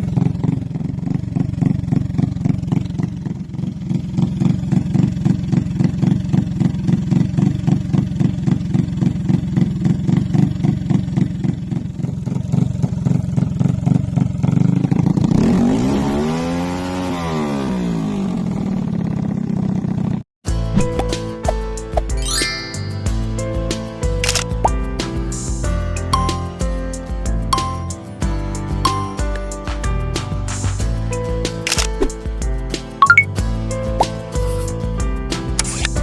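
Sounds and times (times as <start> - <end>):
motorcycle engine idling and revving: 0.0 - 20.7.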